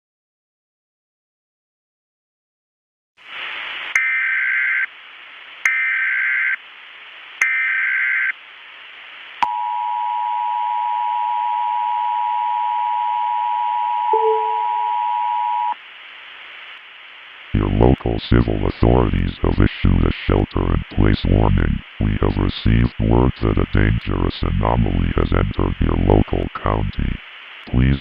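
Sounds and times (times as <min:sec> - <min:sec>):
static hiss: 0:03.2 - 0:09.4, 0:15.7 - 0:28.0
data tone bursts: 0:14.1 - 0:15.0
two-tone attention signal: 0:14.1 - 0:15.1.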